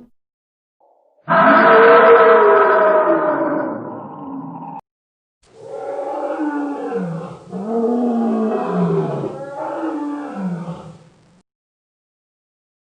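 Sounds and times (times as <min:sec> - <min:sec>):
big cat roar: 0:01.3 - 0:04.8, 0:05.5 - 0:11.1.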